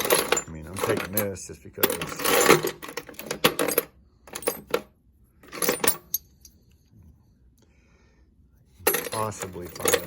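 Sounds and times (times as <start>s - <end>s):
knobs clinking and rattling: 0.0s - 6.5s, 8.8s - 10.0s.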